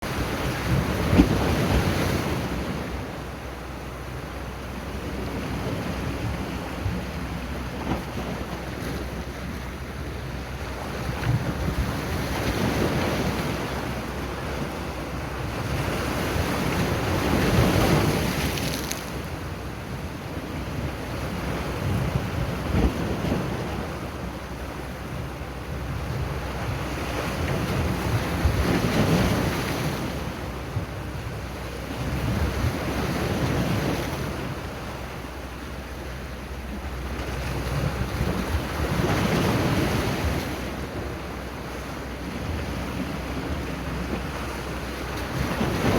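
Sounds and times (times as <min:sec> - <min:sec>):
wind buffeting microphone: 0:00.0 - 0:03.3, 0:04.6 - 0:24.6, 0:25.3 - 0:35.0
sea waves breaking: 0:00.0 - 0:45.9.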